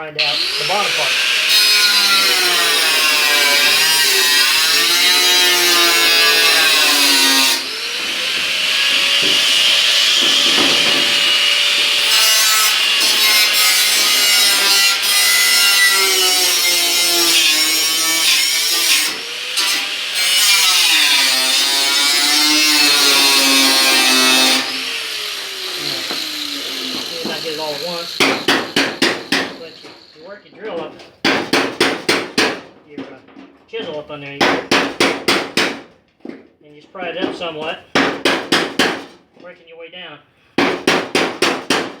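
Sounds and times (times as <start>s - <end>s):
angle grinder grinding steel: 0.2s - 30.3s.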